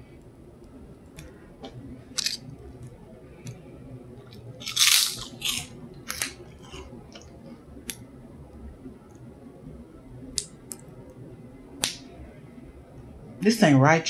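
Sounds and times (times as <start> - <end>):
crisp chewing crunches: 4.6 - 6.9.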